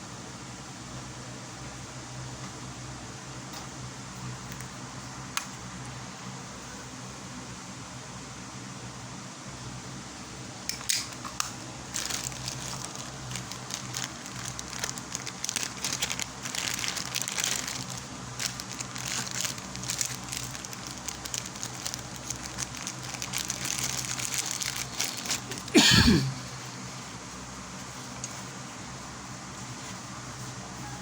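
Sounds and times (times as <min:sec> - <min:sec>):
packaging crinkling: 0:11.8 - 0:25.8.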